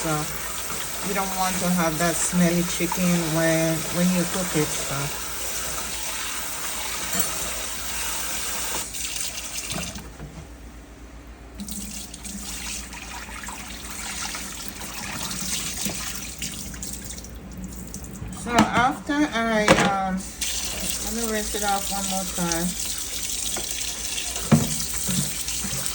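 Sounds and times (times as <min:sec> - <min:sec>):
tap running into a sink: 0:03.7 - 0:08.9, 0:09.5 - 0:10.5, 0:11.6 - 0:18.9, 0:19.7 - 0:25.9.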